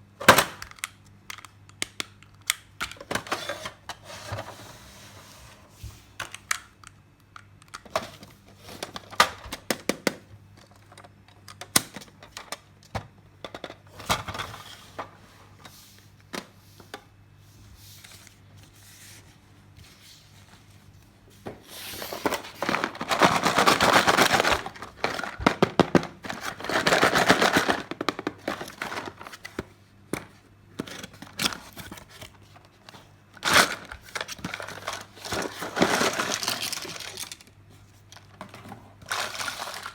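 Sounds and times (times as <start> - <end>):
plastic toy parts clicking: 0.6 - 3.0
plastic packaging crinkling: 22.0 - 29.5, 33.4 - 38.4, 39.0 - 39.9.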